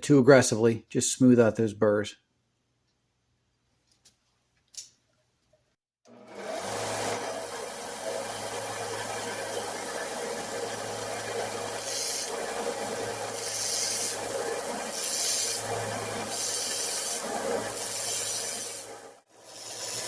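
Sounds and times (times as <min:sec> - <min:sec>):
small motor running: 0:06.1 - 0:20.0
sanding rasping hiss: 0:11.7 - 0:20.0.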